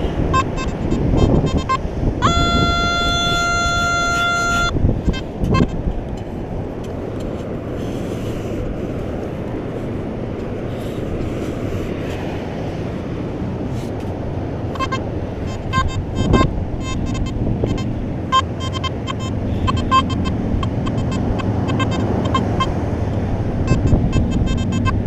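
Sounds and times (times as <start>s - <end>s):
short beep: 0.0s - 5.8s, 14.8s - 22.8s, 23.7s - 25.0s
metal detector steady tone: 0.0s - 9.1s, 14.6s - 25.0s
wind: 0.0s - 25.0s.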